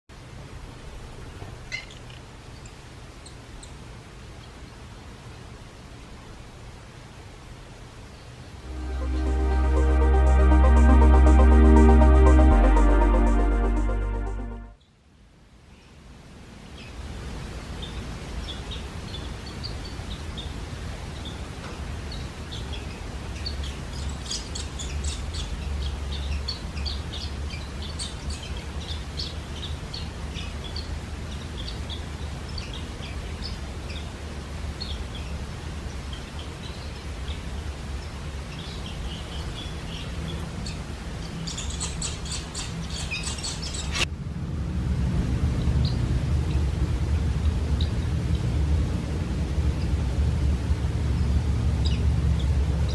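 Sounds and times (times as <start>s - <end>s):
steady low rumble: 44.1s - 51.6s.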